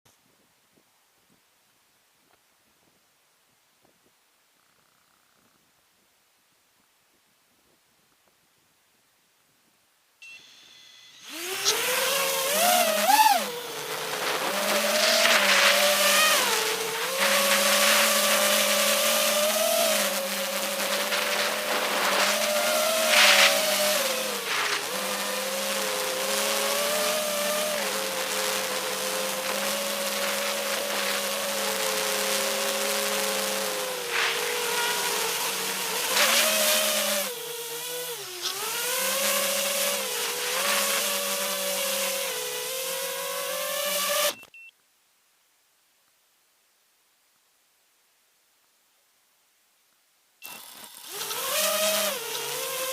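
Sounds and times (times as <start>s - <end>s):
drone motors whining: 10.3s - 44.4s, 50.4s - 52.9s.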